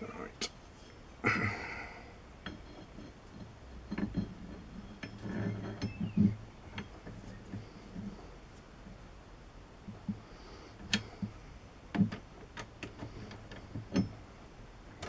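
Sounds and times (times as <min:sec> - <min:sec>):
metal tools clinking and knocking: 0:02.4 - 0:08.2, 0:12.9 - 0:14.3.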